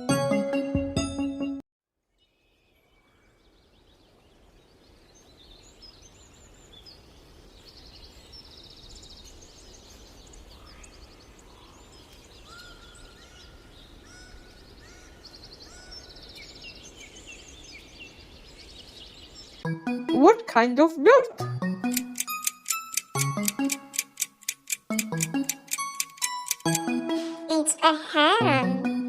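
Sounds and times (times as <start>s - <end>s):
outdoor background noise: 2.0s - 19.6s, 20.2s - 28.6s
small birds chirping and trilling: 2.2s - 19.6s.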